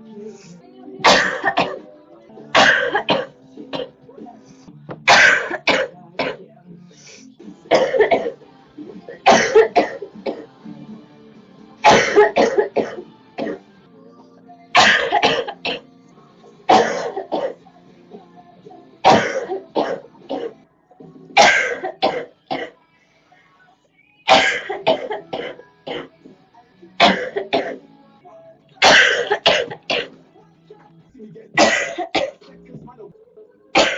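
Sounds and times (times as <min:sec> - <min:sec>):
girl coughing: 0:01.0 - 0:01.8, 0:02.6 - 0:03.9, 0:05.1 - 0:06.4, 0:07.7 - 0:08.4, 0:09.2 - 0:10.5, 0:11.8 - 0:13.6, 0:14.8 - 0:15.8, 0:16.7 - 0:17.6, 0:19.1 - 0:20.6, 0:21.4 - 0:22.8, 0:24.3 - 0:26.1, 0:27.0 - 0:27.8, 0:28.8 - 0:30.2, 0:31.6 - 0:32.4.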